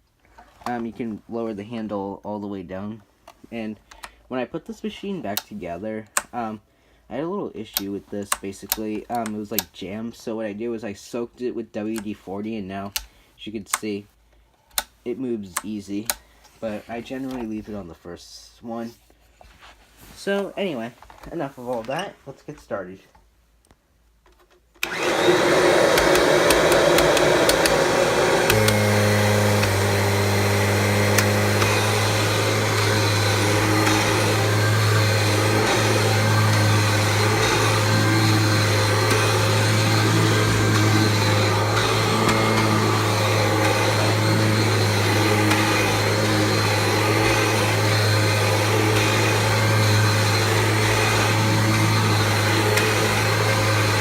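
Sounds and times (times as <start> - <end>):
vacuum cleaner running: 24.8 - 54.0.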